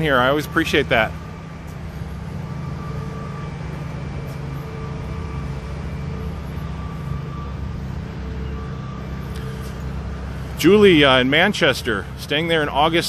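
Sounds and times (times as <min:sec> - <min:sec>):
engine humming: 0:00.0 - 0:13.0.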